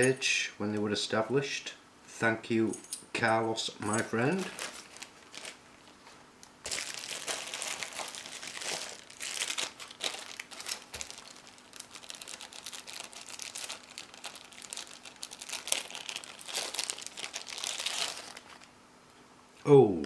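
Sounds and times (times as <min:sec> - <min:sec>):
wrapping crackling and rustling: 0:03.8 - 0:18.8.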